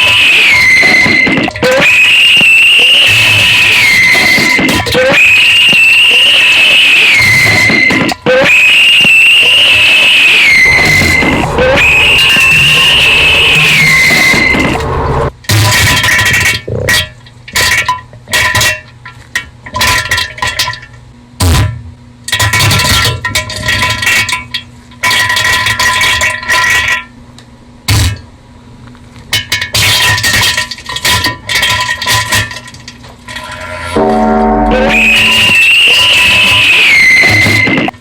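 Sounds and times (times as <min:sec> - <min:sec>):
choppy alarm noise bursts: 0:08.3 - 0:15.3, 0:33.3 - 0:38.0
steady high tones: 0:10.6 - 0:15.3, 0:33.3 - 0:37.0.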